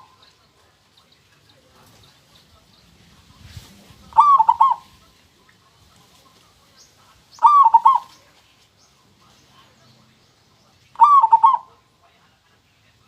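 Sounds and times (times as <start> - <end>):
dove cooing: 4.1 - 5.1, 7.4 - 8.3, 10.9 - 11.8.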